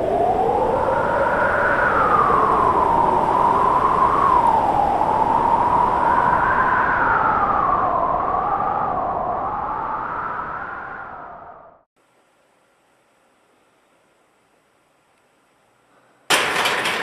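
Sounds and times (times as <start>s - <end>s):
blizzard wind howling: 0.0s - 11.9s.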